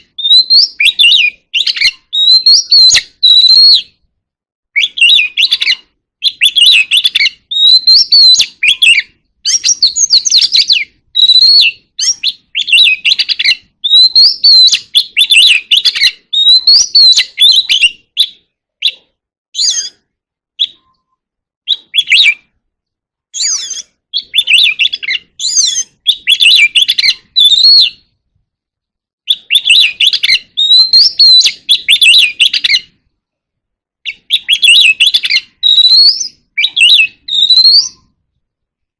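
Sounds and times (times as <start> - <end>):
bird singing whistled phrases: 0.0 - 4.1, 4.7 - 22.6, 23.3 - 28.2, 29.2 - 33.0, 34.0 - 38.2.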